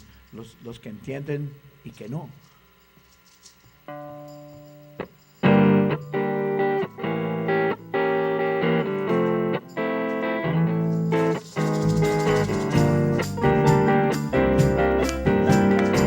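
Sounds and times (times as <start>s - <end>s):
guitar chord ringing: 3.9s - 16.0s
live band playing: 5.4s - 16.0s.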